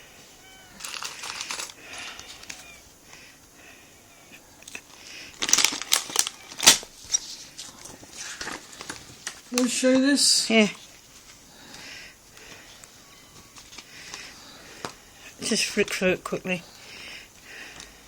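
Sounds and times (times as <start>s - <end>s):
plastic parts clicking and rattling: 0.8s - 2.6s, 4.7s - 9.8s
plastic packaging crinkling: 0.8s - 2.8s, 4.7s - 9.8s.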